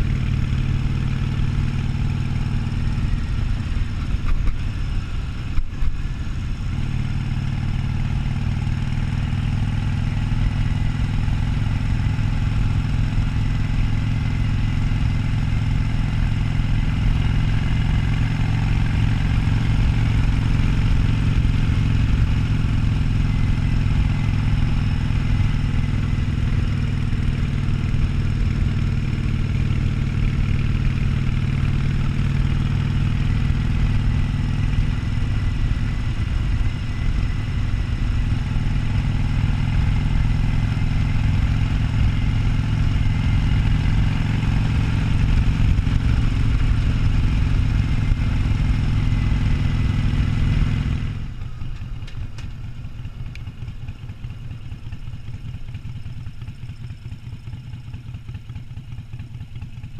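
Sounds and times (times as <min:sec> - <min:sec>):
motorcycle engine running: 0:00.0 - 0:59.9.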